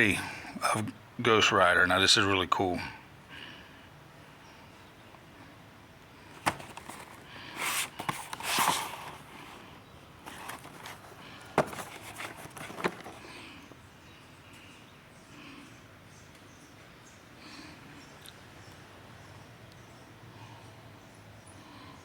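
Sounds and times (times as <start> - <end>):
cardboard sliding scrape: 6.4 - 9.6, 10.2 - 13.2
boxes knocking: 10.3 - 13.2.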